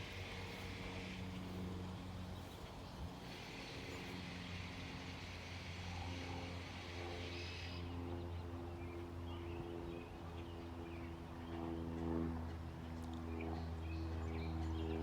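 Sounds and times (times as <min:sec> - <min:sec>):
faint outdoor background noise: 0:00.0 - 0:15.0
steady low hum: 0:00.0 - 0:15.0.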